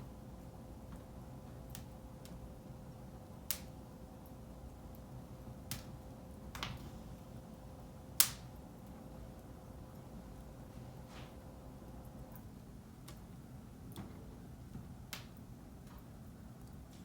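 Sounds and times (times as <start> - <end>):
wood fire crackling: 0.0 - 17.0
sharp pops of fire: 3.4 - 3.8, 5.7 - 7.0, 8.2 - 8.6, 15.1 - 16.0.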